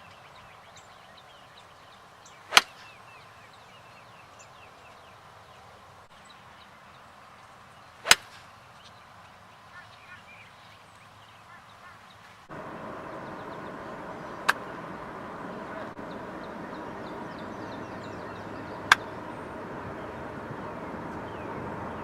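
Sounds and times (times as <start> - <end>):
faint bird chirps: 0.0 - 22.0
steady outdoor hiss: 0.0 - 22.0
golf club striking ball: 2.5 - 2.9, 8.0 - 8.4, 14.4 - 14.8, 17.4 - 19.4.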